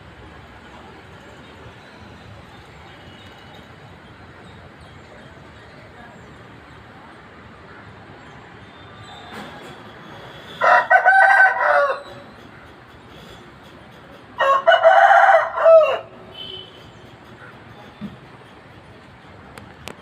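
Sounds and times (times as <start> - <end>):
rooster crowing: 10.6 - 12.3, 14.4 - 16.2.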